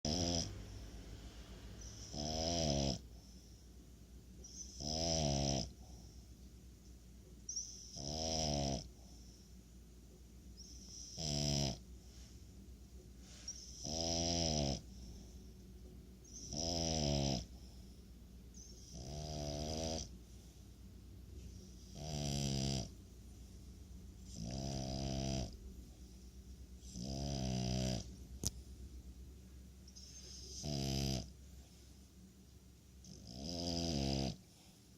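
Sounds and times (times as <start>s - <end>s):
dog snoring: 0.1s - 0.9s, 1.8s - 3.4s, 4.4s - 6.1s, 7.6s - 9.2s, 10.6s - 11.9s, 13.5s - 15.3s, 16.2s - 17.9s, 18.7s - 20.2s, 21.8s - 23.0s, 24.2s - 25.6s, 26.8s - 28.1s, 29.9s - 31.3s, 33.0s - 34.7s.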